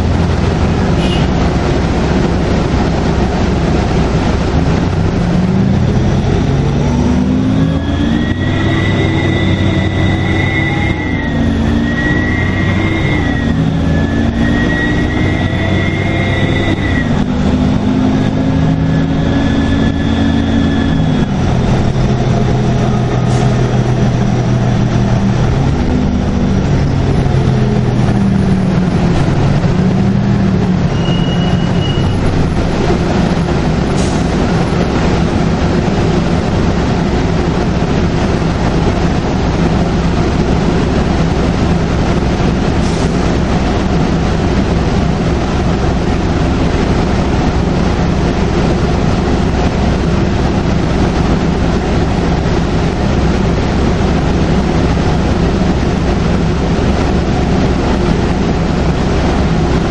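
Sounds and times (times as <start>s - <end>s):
bus engine drone: 0.0s - 59.9s
road rumble: 0.0s - 59.9s
faint high whistle: 30.9s - 32.2s.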